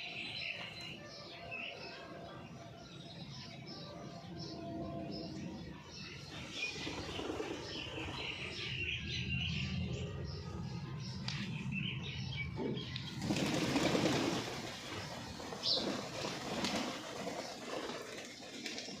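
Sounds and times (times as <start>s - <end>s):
birds chirping: 0.0s - 19.0s
wings flapping: 13.0s - 19.0s.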